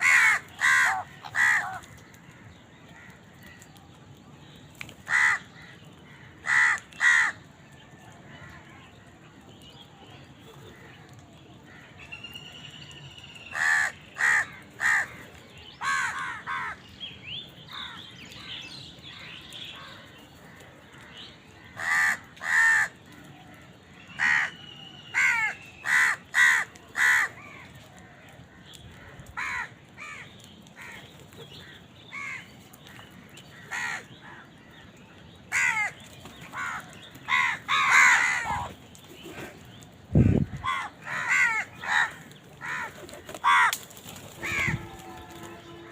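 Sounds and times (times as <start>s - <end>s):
crows cawing: 0.0s - 3.6s, 5.1s - 7.5s, 13.5s - 15.2s, 15.8s - 16.9s, 19.1s - 32.5s, 33.5s - 34.8s, 35.5s - 38.8s, 40.2s - 45.8s.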